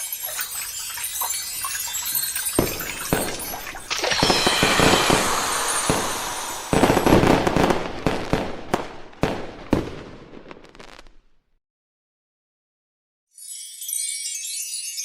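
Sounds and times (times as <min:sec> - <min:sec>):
fireworks crackling and banging: 0:00.0 - 0:11.3.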